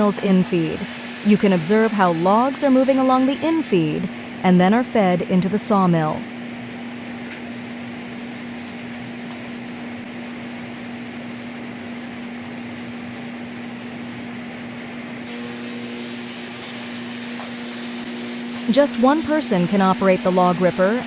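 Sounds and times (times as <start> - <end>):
machine hiss: 0.0 - 3.6, 15.3 - 21.0
sawmill machine hum: 0.0 - 4.5, 15.2 - 21.0
higher machine tones: 15.3 - 21.0.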